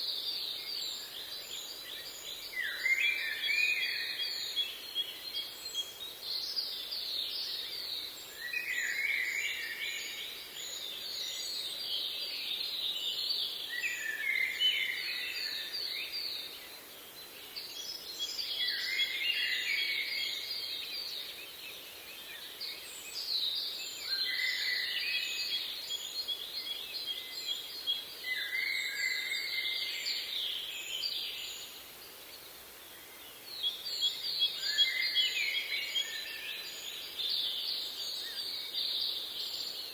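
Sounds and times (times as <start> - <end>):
faint outdoor hiss: 0.0 - 39.9
songbirds chirping and trilling: 0.0 - 39.9.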